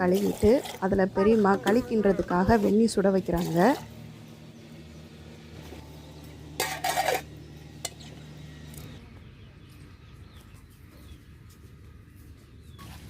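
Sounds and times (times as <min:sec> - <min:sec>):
low steady hum: 0:00.0 - 0:13.0
metal pot clanking: 0:06.6 - 0:08.1.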